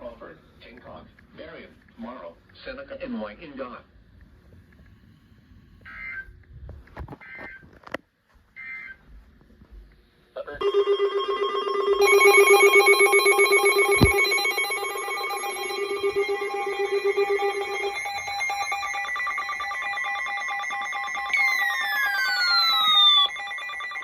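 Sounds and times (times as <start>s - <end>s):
two-tone attention signal: 10.6s - 24.0s
screeching digital data bursts: 14.5s - 24.0s.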